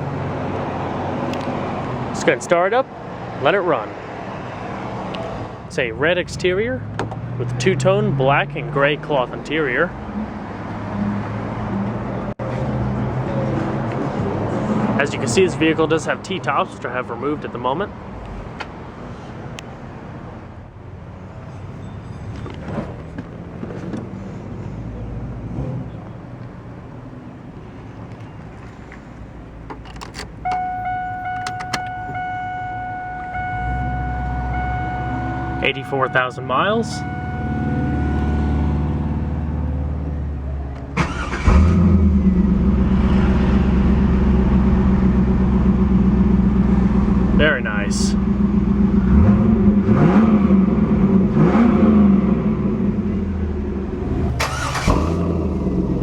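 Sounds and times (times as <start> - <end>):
car engine idling: 22.4 - 43.0, 43.6 - 49.7.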